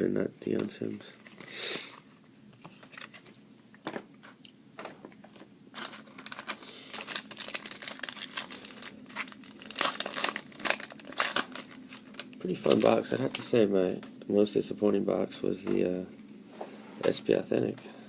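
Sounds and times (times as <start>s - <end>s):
card pack wrapper crinkling: 5.7s - 14.1s.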